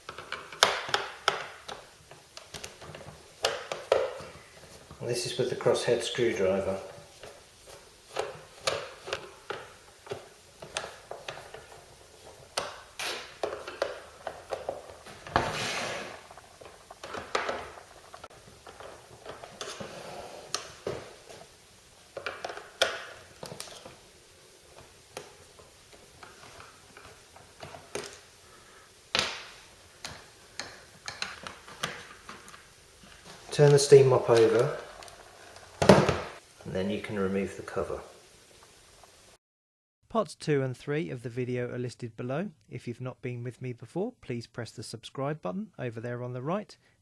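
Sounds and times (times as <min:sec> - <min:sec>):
short scrapes: 0:15.4 - 0:16.3.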